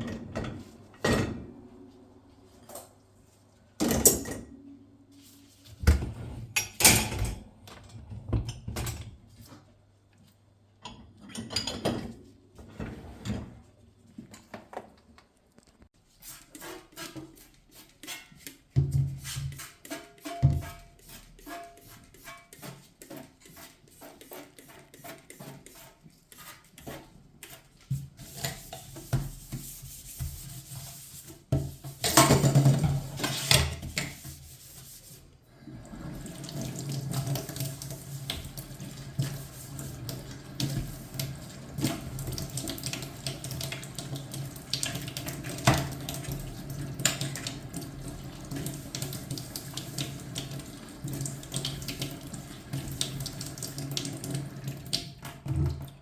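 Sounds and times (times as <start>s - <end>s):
tap water running into sink: 35.8s - 56.0s.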